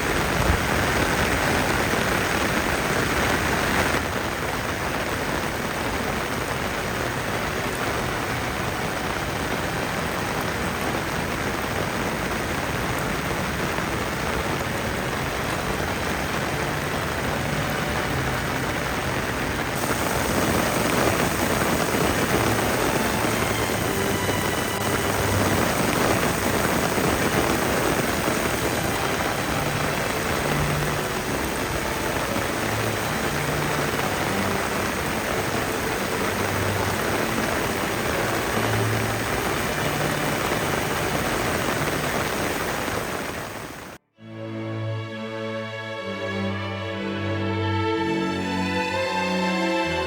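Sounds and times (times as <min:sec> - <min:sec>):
heavy rain falling: 0:00.0 - 0:44.0, 0:46.1 - 0:50.0.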